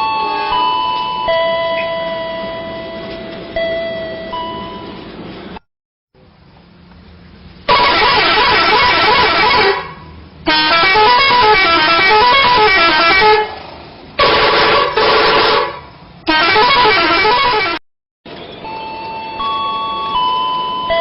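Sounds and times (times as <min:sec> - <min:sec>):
multi-tone musical air horn: 0:00.0 - 0:01.1, 0:07.7 - 0:13.6, 0:14.2 - 0:17.8.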